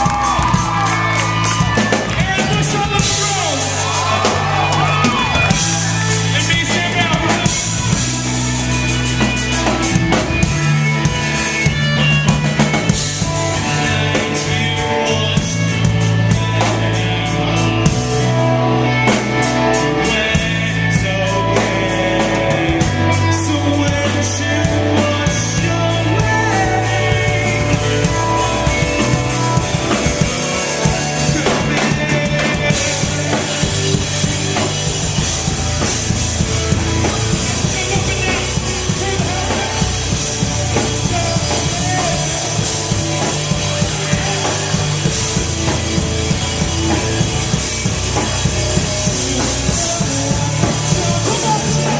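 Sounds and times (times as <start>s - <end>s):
rock band playing live: 0.0s - 51.9s
person singing: 13.2s - 34.6s, 35.4s - 47.3s, 48.2s - 51.9s.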